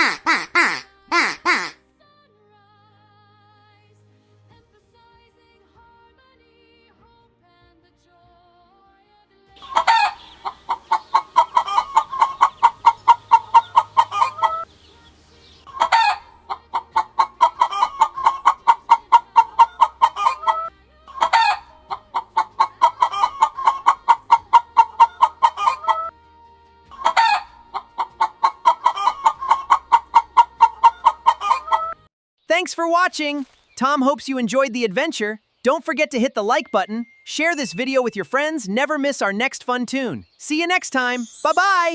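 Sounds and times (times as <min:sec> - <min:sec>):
bird call with fast clucking notes: 0:00.0 - 0:01.8, 0:09.6 - 0:14.7, 0:15.6 - 0:26.1, 0:27.0 - 0:32.0.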